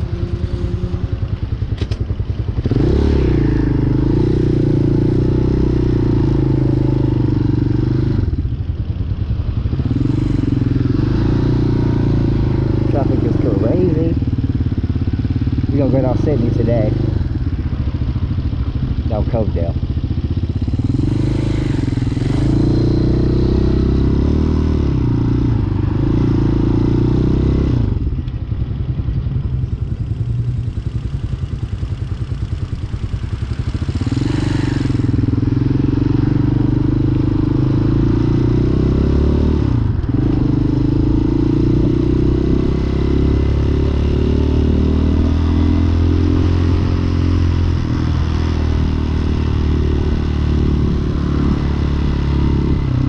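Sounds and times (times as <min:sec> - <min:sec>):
dirt bike engine running: 0:00.0 - 0:53.0.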